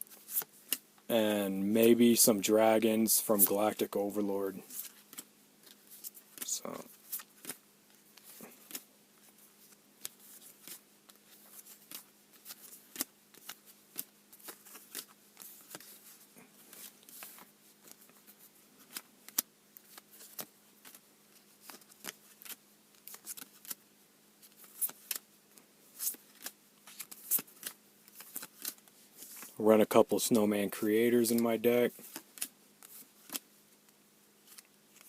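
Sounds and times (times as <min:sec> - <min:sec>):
faint steady hum: 0:00.0 - 0:35.0
trading cards flicking and clicking: 0:04.6 - 0:23.8, 0:24.5 - 0:25.2, 0:26.0 - 0:29.5, 0:31.2 - 0:33.5.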